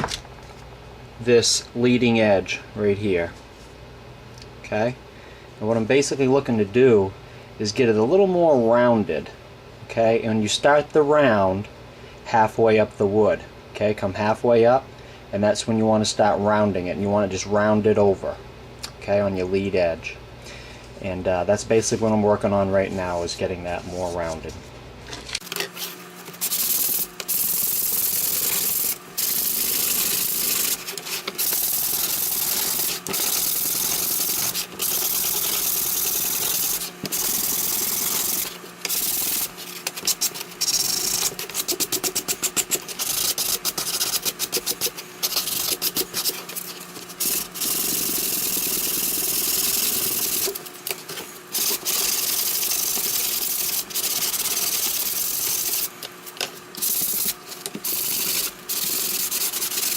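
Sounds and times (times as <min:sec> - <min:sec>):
sandpaper scratching on wood: 0:26.4 - 0:50.5, 0:51.6 - 0:55.9, 0:56.8 - 0:59.9.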